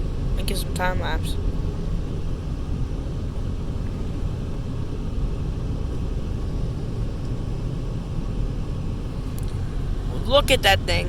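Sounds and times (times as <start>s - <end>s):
car cabin road rumble: 0.0s - 11.0s.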